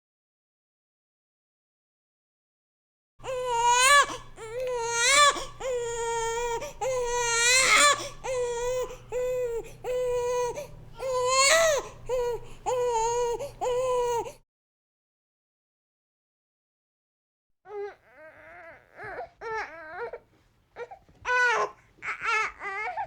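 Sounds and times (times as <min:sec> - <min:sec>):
infant crying: 0:03.2 - 0:14.4, 0:17.7 - 0:23.0.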